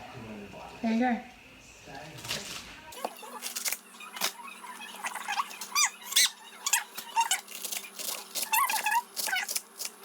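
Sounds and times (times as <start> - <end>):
high squeaky chirps: 3.0 - 9.9.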